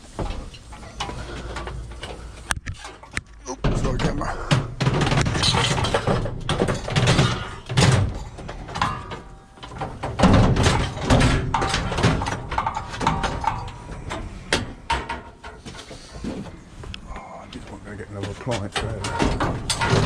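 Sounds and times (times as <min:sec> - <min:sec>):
scrap metal clanking: 0:00.0 - 0:16.6, 0:17.7 - 0:20.0.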